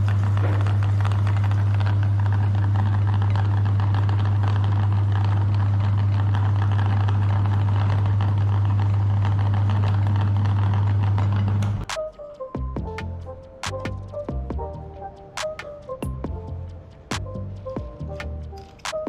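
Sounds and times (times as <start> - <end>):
electric meat grinder running: 0.0 - 11.9.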